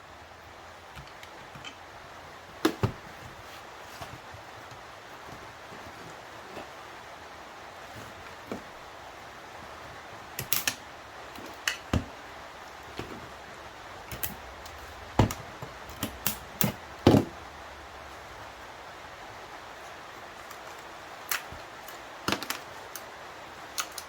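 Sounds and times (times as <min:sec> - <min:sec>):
hand tools clicking and knocking: 0:14.0 - 0:17.3.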